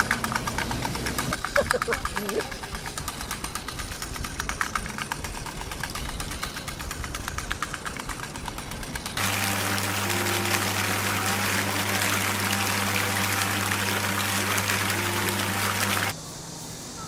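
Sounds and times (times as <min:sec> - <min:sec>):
rapid regular ticking: 0:00.0 - 0:09.3.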